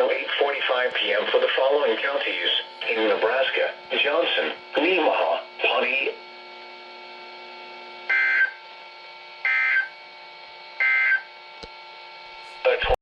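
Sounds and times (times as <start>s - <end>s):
faint steady broadcast hum: 0.0s - 8.8s, 11.6s - 13.0s.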